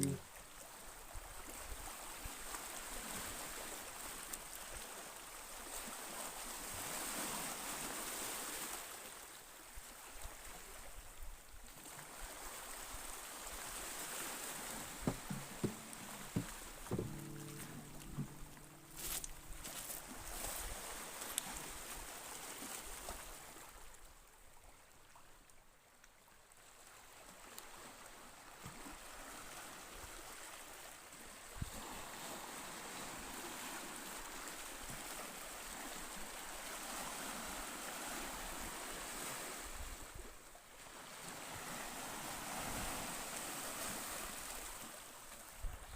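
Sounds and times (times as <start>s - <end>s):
surf washing onto shore: 13.6s - 21.4s.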